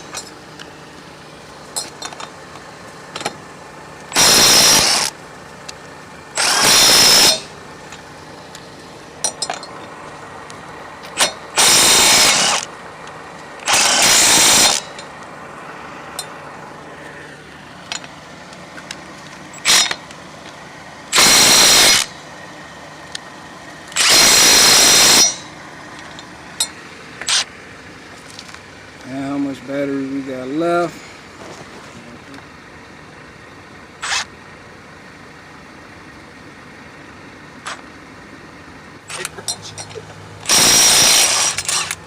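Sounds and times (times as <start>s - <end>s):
impact wrench hammering: 4.1s - 5.1s, 6.4s - 8.0s, 9.2s - 9.8s, 11.0s - 12.7s, 13.6s - 15.1s, 19.5s - 20.1s, 21.1s - 22.2s, 23.9s - 25.5s, 39.1s - 42.0s.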